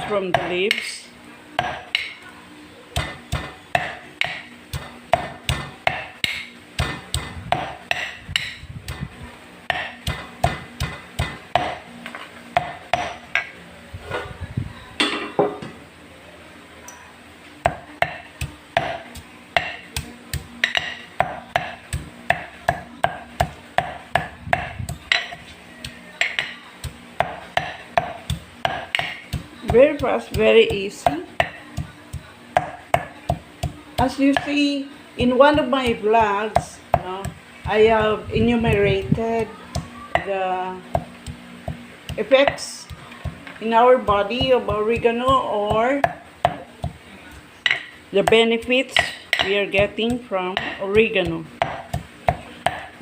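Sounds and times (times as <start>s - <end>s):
pestle pounding in a mortar: 1.6s - 2.2s, 3.0s - 11.8s, 12.6s - 13.2s, 17.7s - 34.6s, 35.2s - 47.0s, 47.7s - 53.0s.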